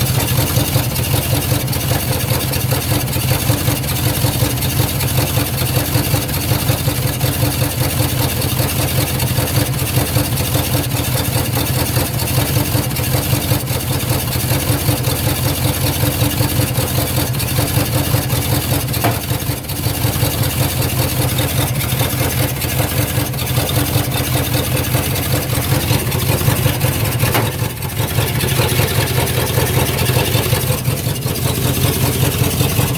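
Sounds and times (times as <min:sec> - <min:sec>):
engine running steadily: 0:00.0 - 0:32.9
sharp engine pop: 0:19.0 - 0:19.5, 0:27.2 - 0:27.9.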